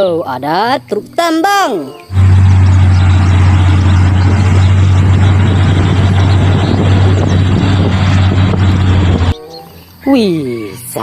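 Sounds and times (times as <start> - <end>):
machine drone with hiss: 2.1 - 9.4.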